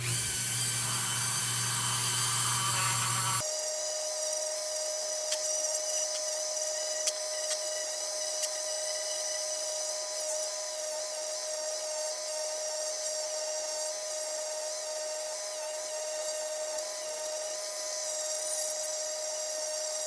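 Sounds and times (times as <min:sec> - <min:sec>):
rotary tool whining: 0:00.0 - 0:03.4.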